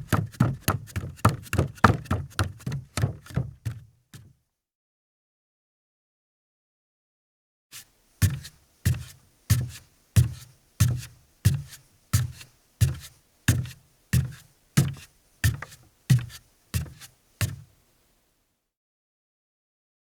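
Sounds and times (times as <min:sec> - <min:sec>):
bare footsteps on wooden deck: 0:00.0 - 0:04.3, 0:08.2 - 0:17.7.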